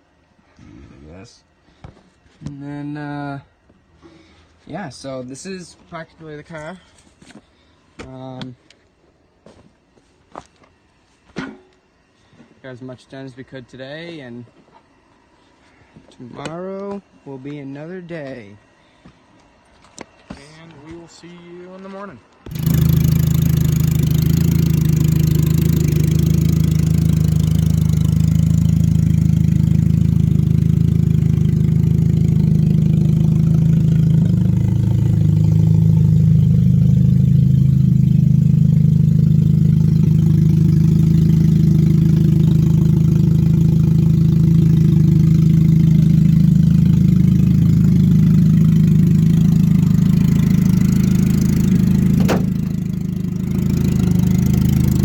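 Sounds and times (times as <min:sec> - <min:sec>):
car engine idling: 0:22.5 - 0:55.0.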